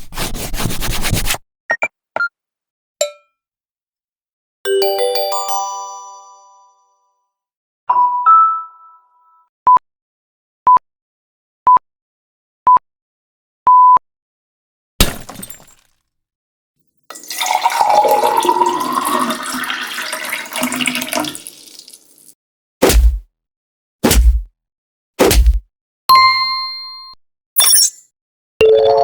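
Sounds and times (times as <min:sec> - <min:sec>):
sharp crack: 0:22.8 - 0:23.2, 0:24.0 - 0:24.4.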